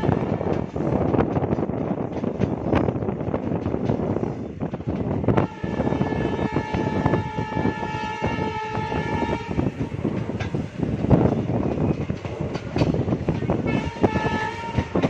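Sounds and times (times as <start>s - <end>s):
train horn blast: 0.0s - 0.6s, 5.3s - 9.8s, 13.5s - 15.0s
train wheels rumbling on track: 0.0s - 15.0s.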